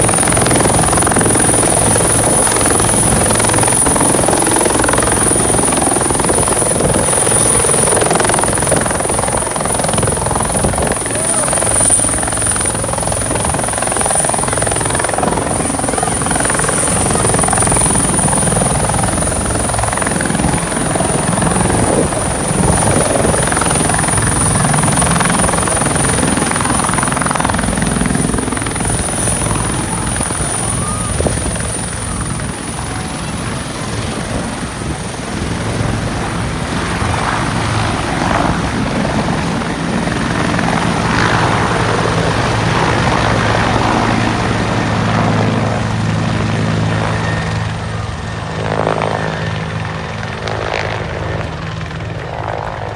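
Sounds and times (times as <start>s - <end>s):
helicopter rotor chop: 0.0s - 52.9s
helicopter turbine whine: 0.0s - 52.9s.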